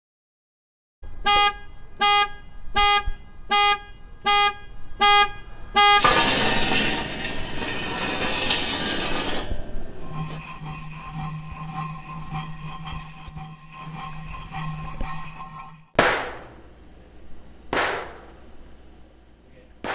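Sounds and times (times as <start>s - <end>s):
short car horn honks: 1.2s - 6.1s.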